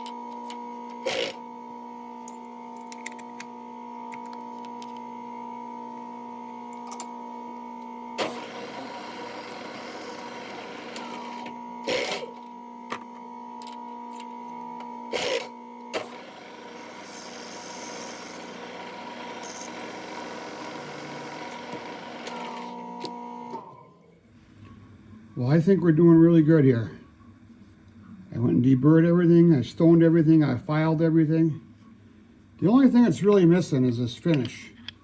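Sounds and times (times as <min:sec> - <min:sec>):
drill cutting metal: 0:01.0 - 0:01.4, 0:08.2 - 0:12.4, 0:15.1 - 0:23.5
machine tool motor hum: 0:07.8 - 0:23.8.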